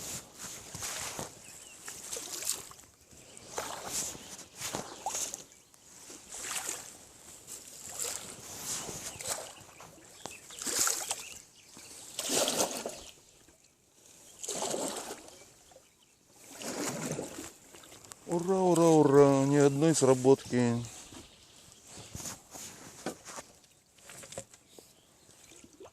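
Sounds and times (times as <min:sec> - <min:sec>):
oars splashing in water: 0:00.4 - 0:20.6, 0:23.0 - 0:25.9.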